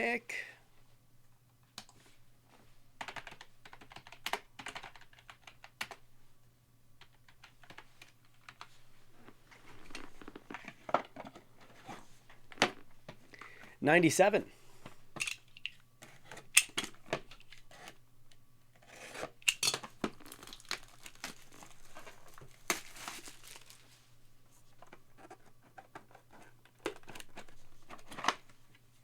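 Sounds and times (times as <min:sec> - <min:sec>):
packaging tearing and crinkling: 0:20.0 - 0:23.9.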